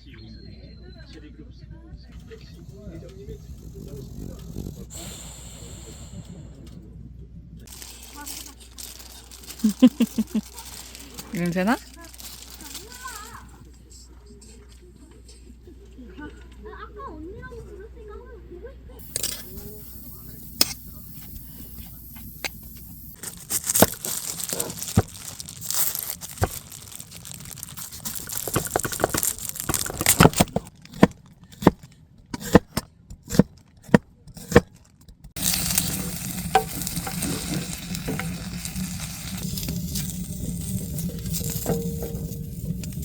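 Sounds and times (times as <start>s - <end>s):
food sizzling in a pan: 7.7s - 13.4s, 19.0s - 29.7s, 35.4s - 43.0s.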